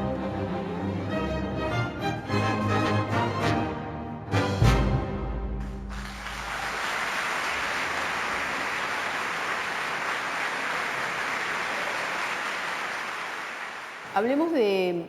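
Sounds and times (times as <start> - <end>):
audience applause: 5.6 - 14.5.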